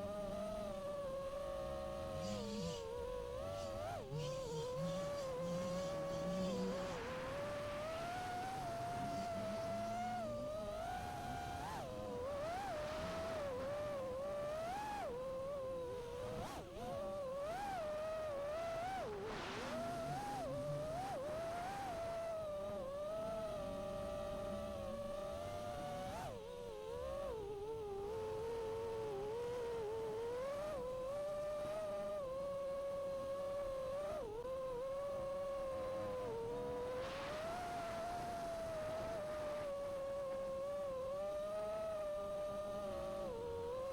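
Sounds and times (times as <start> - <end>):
quadcopter motors whining: 0.0 - 43.9.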